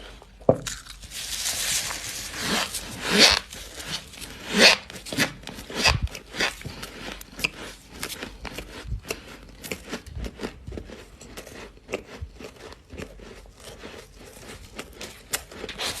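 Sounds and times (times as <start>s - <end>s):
chewing frost crunches: 5.6s - 16.0s.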